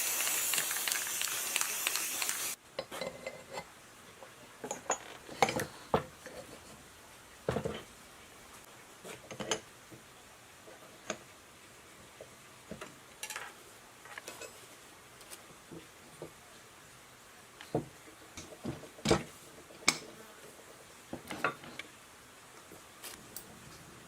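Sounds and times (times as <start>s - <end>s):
spraying hiss: 0.0s - 2.6s.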